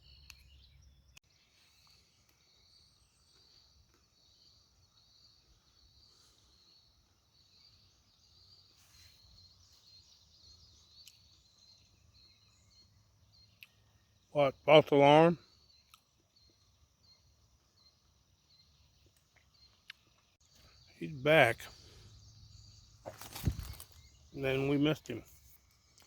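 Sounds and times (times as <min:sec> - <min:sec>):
insect chirring: 0:21.6 - 0:26.0.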